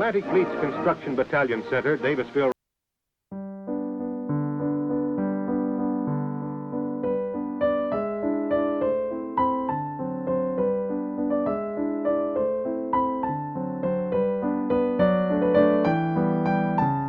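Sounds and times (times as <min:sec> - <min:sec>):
gentle piano chords: 0:03.4 - 0:17.0.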